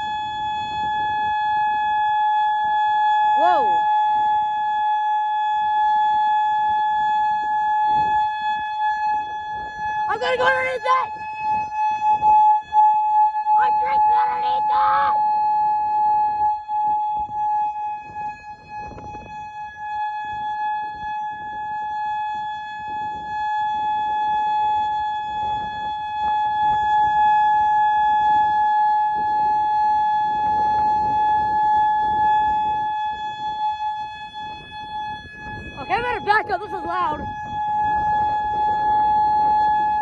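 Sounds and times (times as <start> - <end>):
warning siren steady tone: 0.0 - 40.0.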